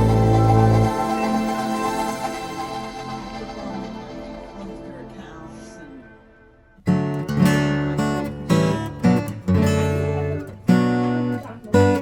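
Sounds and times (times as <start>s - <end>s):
strummed acoustic guitar chords: 0.0s - 5.8s
soft background music: 0.0s - 6.8s.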